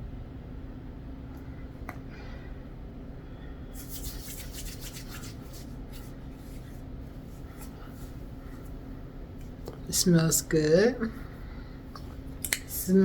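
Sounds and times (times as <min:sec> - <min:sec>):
steady low hum: 0:00.0 - 0:13.0
hands rubbing and rustling: 0:03.8 - 0:09.6.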